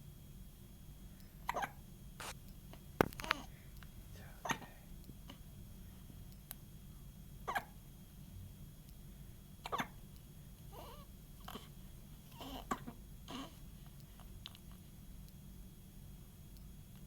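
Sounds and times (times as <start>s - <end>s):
baby hiccupping: 3.0s - 3.5s, 7.5s - 7.8s.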